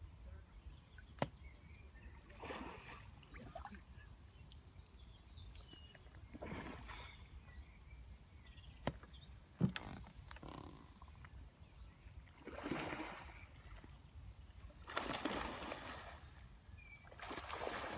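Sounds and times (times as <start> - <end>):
water sloshing: 17.1 - 17.9.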